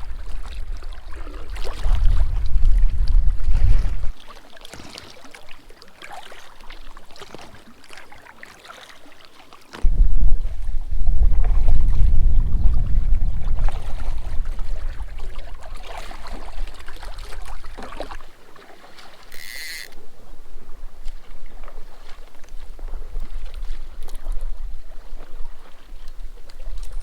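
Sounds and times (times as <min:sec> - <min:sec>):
wind rumble on microphone: 0:00.0 - 0:04.2, 0:09.8 - 0:18.3, 0:19.9 - 0:27.0
paddle strokes in water: 0:00.0 - 0:27.0
water sloshing and splashing: 0:00.0 - 0:27.0.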